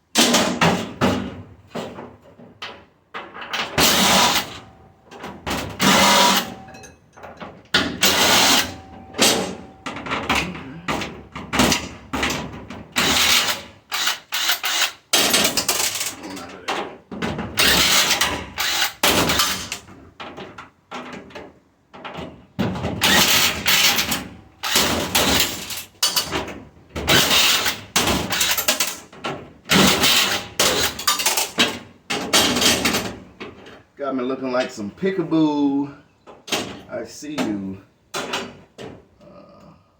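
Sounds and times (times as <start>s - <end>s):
power tool bursts: 3.8s - 4.6s, 5.8s - 6.6s, 8.0s - 9.6s, 13.0s - 16.0s, 17.6s - 19.8s, 23.0s - 25.8s, 27.1s - 28.9s, 29.7s - 31.5s.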